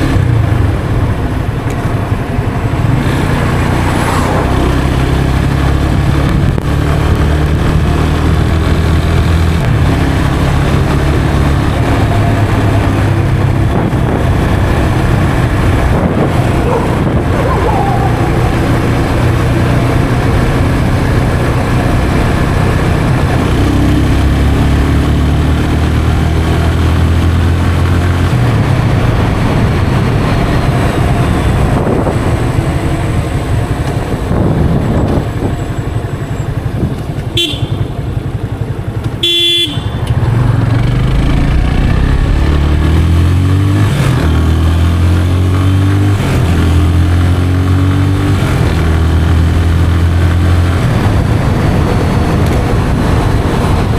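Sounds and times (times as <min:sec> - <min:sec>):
motorcycle engine accelerating: 0:00.0 - 0:53.9
horn beeps: 0:37.4 - 0:38.0, 0:39.2 - 0:40.2.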